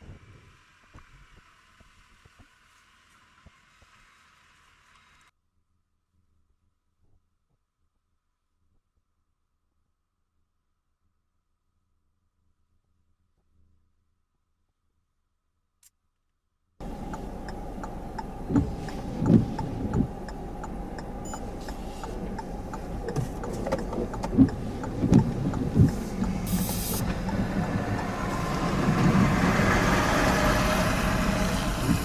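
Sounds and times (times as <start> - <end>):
faint regular ticking: 16.8 - 28.3
rushing wind noise: 16.8 - 32.0
truck engine rumble: 16.8 - 32.0.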